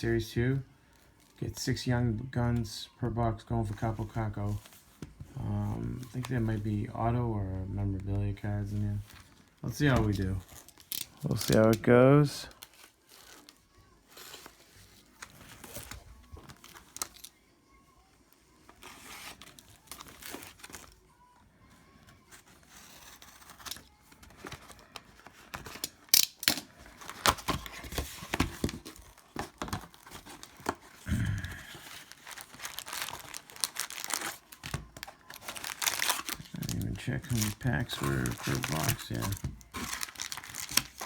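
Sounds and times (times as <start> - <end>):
plastic wrapping crinkling: 7.9 - 17.4, 18.5 - 21.3, 22.2 - 41.0.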